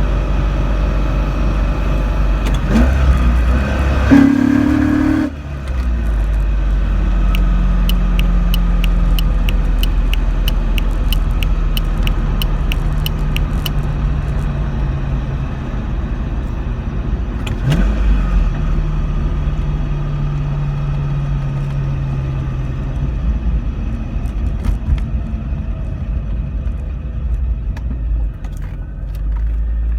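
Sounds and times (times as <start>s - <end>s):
car engine low drone: 0.0s - 29.9s
regular ticking: 7.4s - 13.7s.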